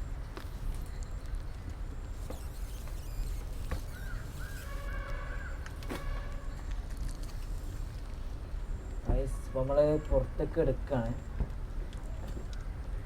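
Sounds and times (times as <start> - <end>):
squeaky call-like tones: 2.3 - 5.0.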